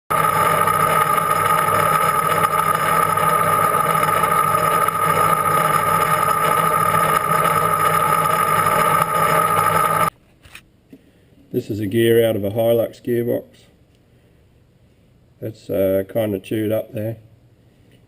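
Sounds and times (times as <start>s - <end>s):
machine motor whining: 0.1s - 10.1s.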